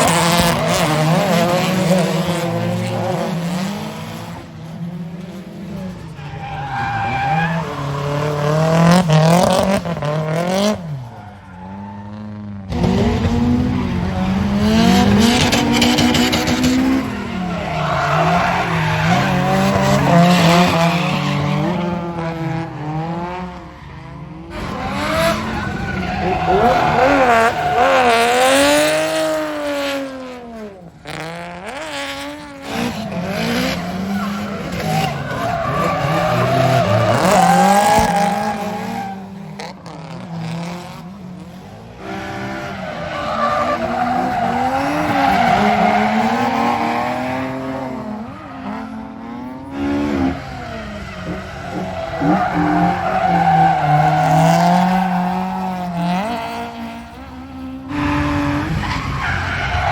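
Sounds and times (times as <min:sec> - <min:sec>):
car engines revving: 0:00.0 - 0:59.9
tyres squealing: 0:13.0 - 0:22.0, 0:24.6 - 0:28.7, 0:33.7 - 0:39.2, 0:50.2 - 0:55.7.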